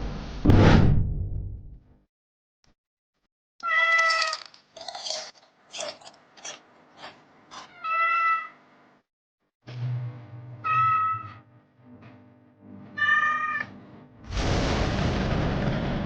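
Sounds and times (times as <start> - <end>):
cat meowing: 3.6 - 4.4, 7.6 - 8.6, 10.6 - 11.4, 13.0 - 13.7.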